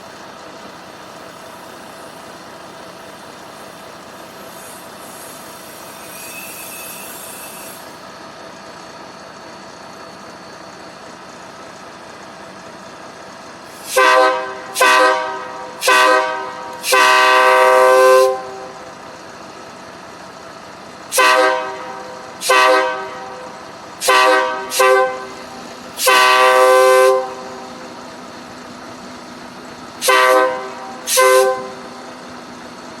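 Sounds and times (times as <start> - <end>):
air horn blasts: 13.8 - 18.9, 21.1 - 25.4, 26.0 - 27.7, 30.0 - 32.0.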